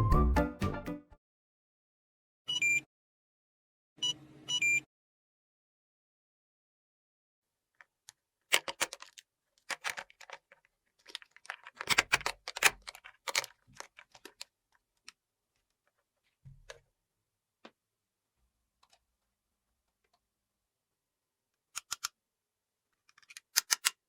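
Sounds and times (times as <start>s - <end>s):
plastic toy pieces clicking: 8.5s - 14.5s, 21.7s - 22.1s, 23.0s - 24.0s.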